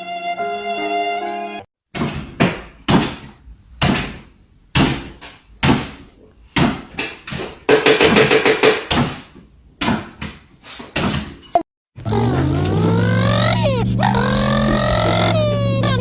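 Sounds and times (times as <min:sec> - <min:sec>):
rapid rattling knocks: 0:02.0 - 0:06.0, 0:06.6 - 0:09.2
sharp knocks: 0:02.0 - 0:06.0, 0:06.6 - 0:10.4.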